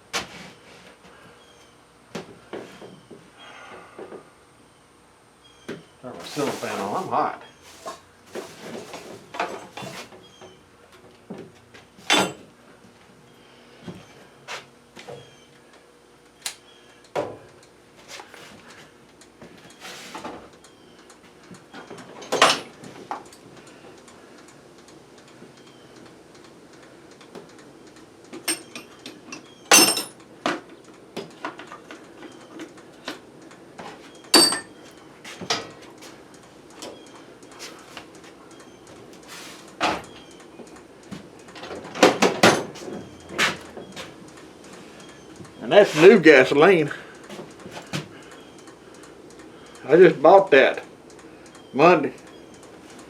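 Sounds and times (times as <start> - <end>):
faint steady hum: 0.0 - 53.0
clanks and knocks of objects: 7.8 - 10.2, 11.3 - 12.5, 21.5 - 23.4, 28.3 - 33.2, 33.8 - 36.2, 41.1 - 44.2.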